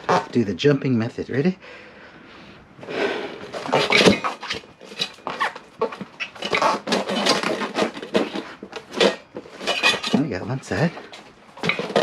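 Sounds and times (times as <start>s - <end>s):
rubber scuffs: 0.0s - 0.4s, 2.8s - 12.0s.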